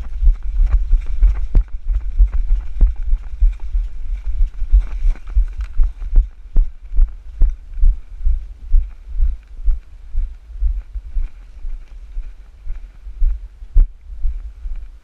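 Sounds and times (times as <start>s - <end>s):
gear rustling and clicking: 4.6s - 6.2s.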